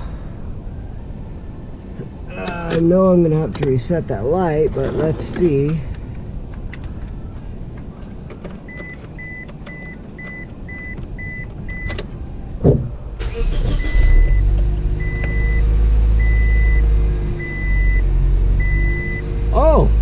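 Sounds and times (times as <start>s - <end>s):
car engine running: 0.0s - 20.0s
ignition click: 5.4s - 15.6s
car warning chime beeping: 8.6s - 12.6s, 13.2s - 19.3s.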